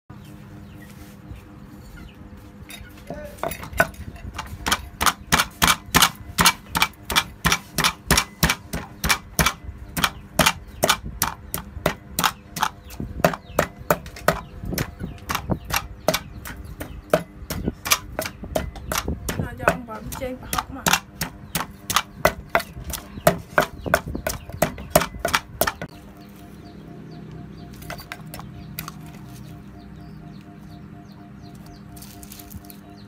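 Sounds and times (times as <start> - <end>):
low steady hum: 0.1 - 33.0
rapid chopping strikes: 3.8 - 25.9.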